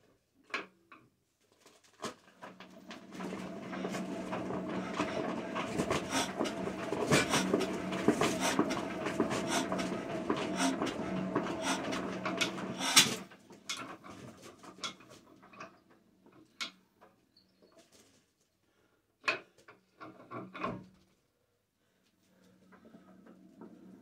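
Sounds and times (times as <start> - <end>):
engine flywheel clattering: 2.7 - 13.3.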